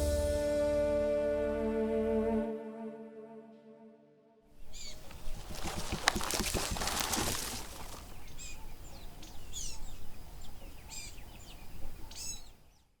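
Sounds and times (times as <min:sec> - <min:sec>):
outdoor background noise: 0:04.5 - 0:13.0
birds chirping: 0:04.6 - 0:13.0.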